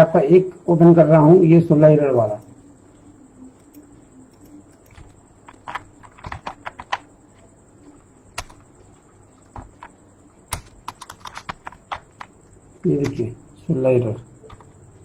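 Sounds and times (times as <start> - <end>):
keyboard typing: 2.1 - 13.4, 14.4 - 15.0.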